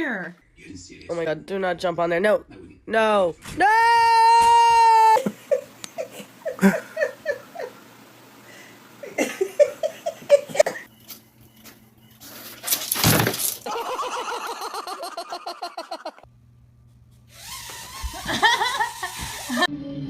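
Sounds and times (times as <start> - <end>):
person laughing: 5.0 - 7.9, 9.0 - 10.9, 13.6 - 16.2, 18.1 - 19.7.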